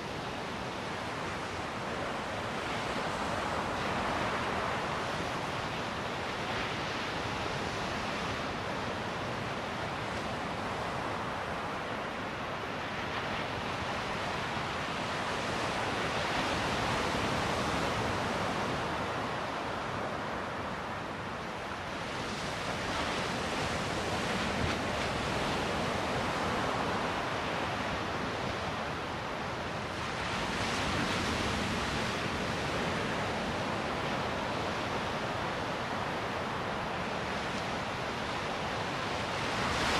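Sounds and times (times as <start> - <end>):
surf breaking on a beach: 0.0 - 39.9.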